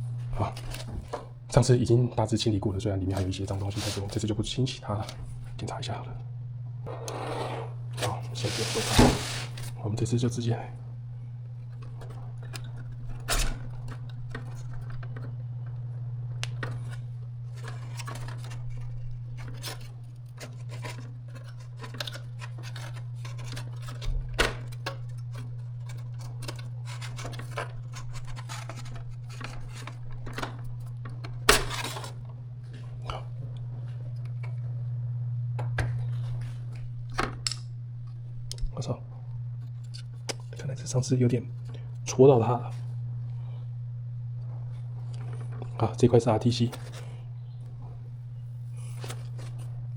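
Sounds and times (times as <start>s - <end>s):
steady low hum: 0.0s - 49.9s.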